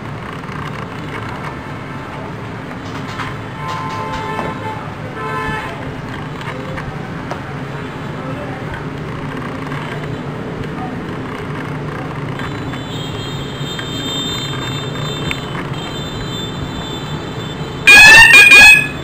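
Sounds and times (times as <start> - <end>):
loud alarm horn: 3.5 - 5.8, 12.8 - 19.0.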